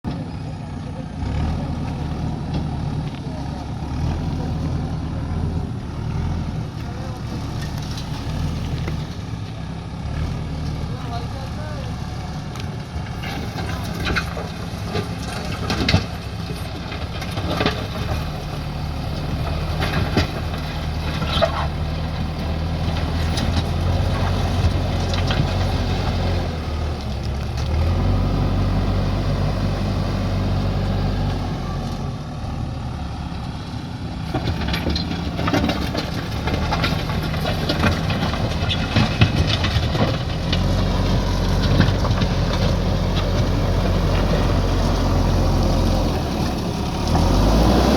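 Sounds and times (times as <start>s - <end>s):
diesel engine running: 0.0s - 47.9s
knocks and clanks: 34.3s - 44.6s.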